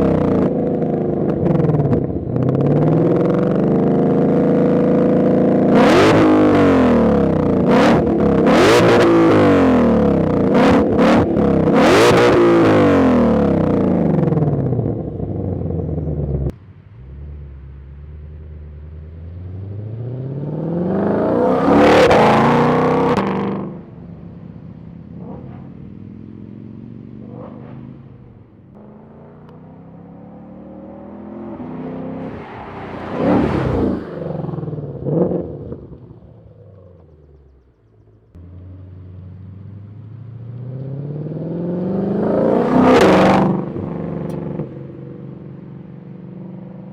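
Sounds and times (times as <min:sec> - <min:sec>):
car engine revving with cracks: 0:00.0 - 0:45.6
car engine idling: 0:13.7 - 0:19.6.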